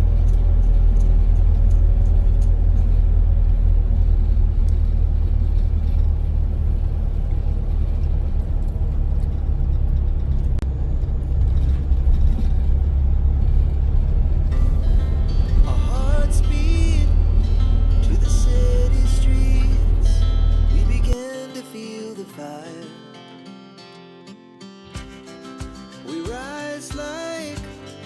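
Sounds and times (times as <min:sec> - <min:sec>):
moving car rumble: 0:00.0 - 0:21.2.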